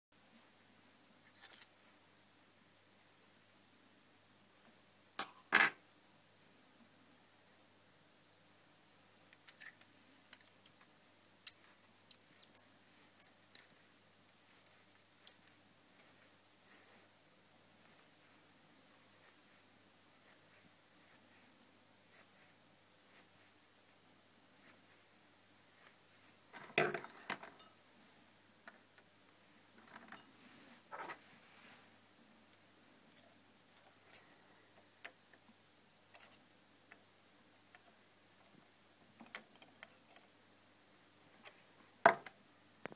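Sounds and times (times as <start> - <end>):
rustling: 10.4 - 27.8.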